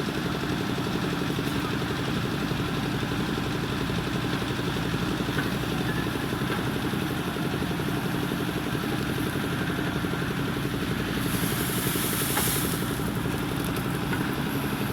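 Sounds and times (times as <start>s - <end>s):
diesel engine running: 0.0s - 14.9s
burst of hiss: 11.2s - 13.0s.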